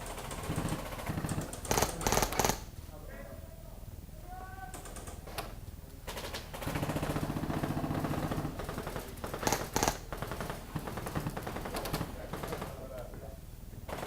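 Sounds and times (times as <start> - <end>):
airsoft gun full-auto burst: 0.0 - 2.7, 6.1 - 13.0
sharp cracks: 0.0 - 2.7, 6.1 - 13.1.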